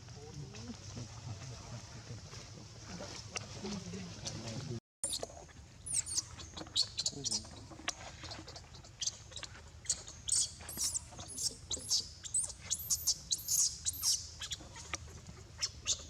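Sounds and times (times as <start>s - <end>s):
baby monkey squealing cries: 5.9s - 7.1s, 9.8s - 14.6s.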